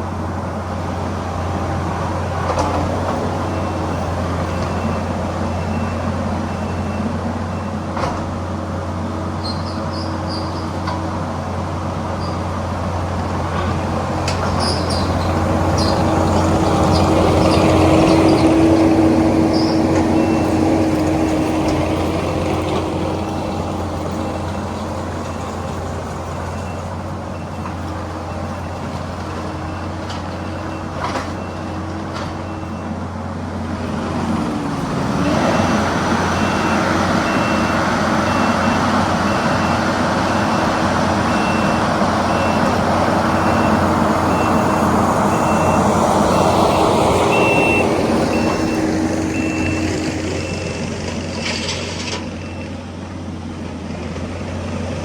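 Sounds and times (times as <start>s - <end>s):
diesel engine running: 0.0s - 55.0s
backup alarm beeping: 36.4s - 50.9s.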